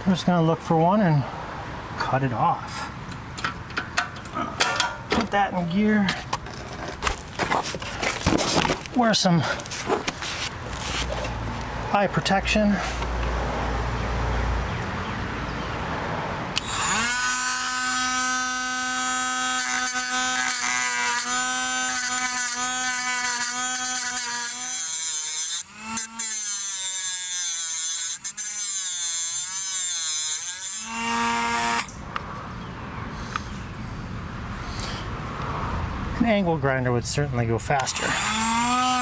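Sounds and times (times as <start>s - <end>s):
rotary tool grinding metal: 16.6s - 32.0s, 37.8s - 39.0s.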